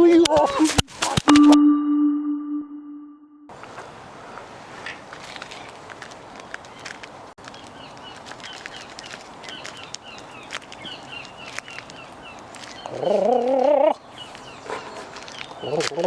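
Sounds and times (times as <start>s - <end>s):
outdoor ambience: 3.5s - 16.0s
small birds chirping: 3.6s - 16.0s.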